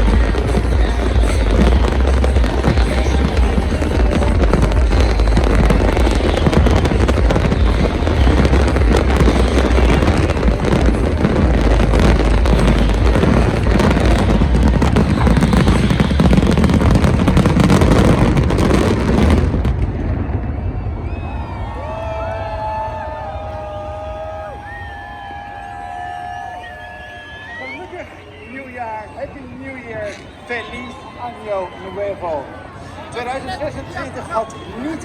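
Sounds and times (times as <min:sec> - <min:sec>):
rumble: 0:00.0 - 0:18.5
fireworks crackling and booming: 0:00.0 - 0:25.9.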